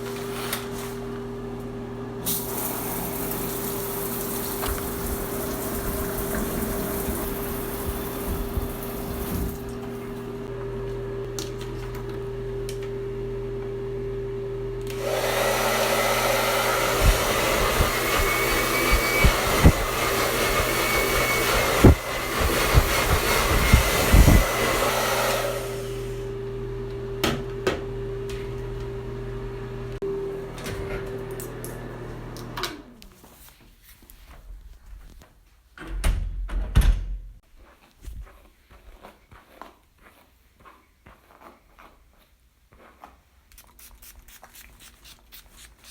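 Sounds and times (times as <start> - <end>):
appliance motor with rushing air: 2.2 - 10.5, 14.8 - 26.4.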